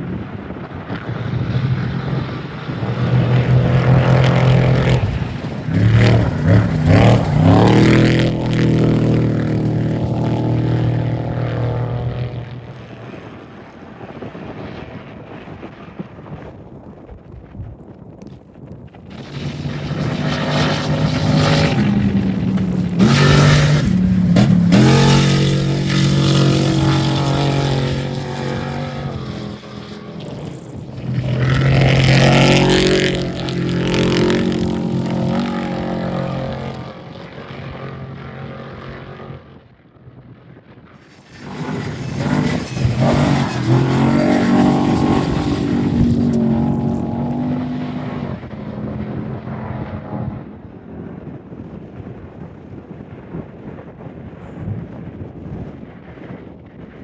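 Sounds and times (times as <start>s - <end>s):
race vehicles passing at speed: 0.0s - 14.0s, 19.1s - 39.7s, 41.0s - 51.0s.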